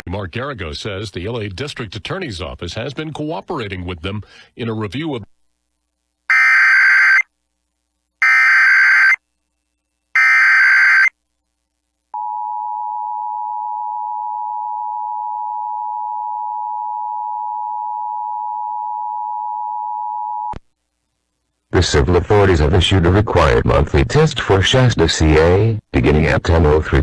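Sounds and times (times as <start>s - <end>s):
screechy digital data tones: 6.3s - 7.3s, 8.2s - 9.2s, 10.2s - 11.1s.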